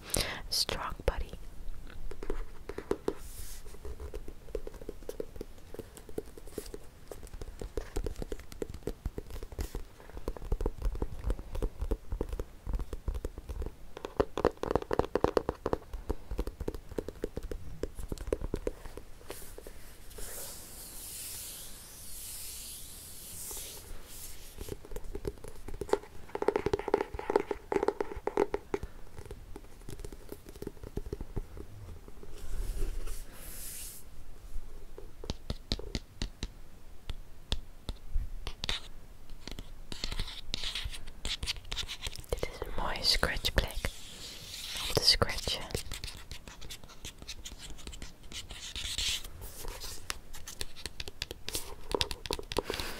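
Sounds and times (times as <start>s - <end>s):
fingers tapping on book: 2.0s - 3.2s, 3.8s - 19.7s, 24.6s - 31.7s, 35.2s - 44.0s, 44.8s - 52.9s
hissy rubbing: 19.2s - 24.9s.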